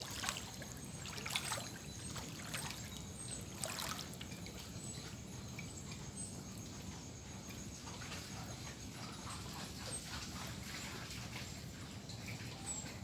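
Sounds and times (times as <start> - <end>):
sharp water splashes: 0.0 - 4.2
floodwater trickling and splashing: 0.0 - 13.0.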